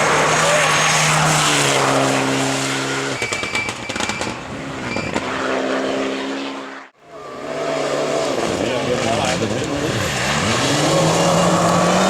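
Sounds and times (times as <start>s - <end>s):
engine cracks and pops: 3.2s - 5.3s.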